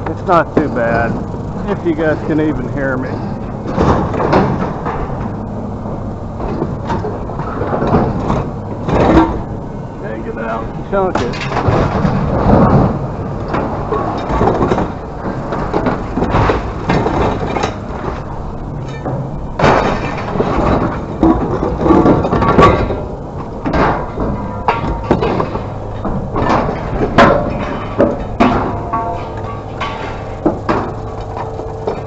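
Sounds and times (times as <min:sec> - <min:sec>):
low machine hum: 0:00.0 - 0:32.0
scrap metal clanging on pile: 0:11.1 - 0:32.0.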